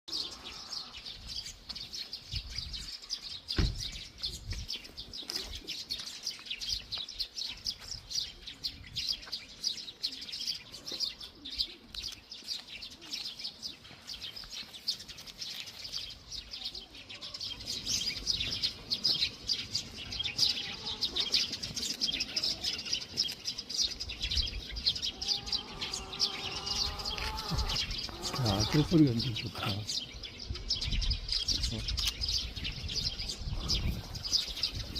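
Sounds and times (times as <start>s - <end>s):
small birds chirping: 0.1s - 34.9s.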